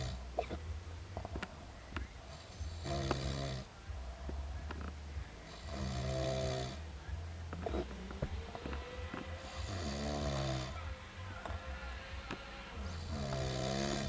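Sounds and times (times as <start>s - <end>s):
man snoring: 2.8s - 3.7s, 5.5s - 6.8s, 9.4s - 10.8s, 12.8s - 14.0s.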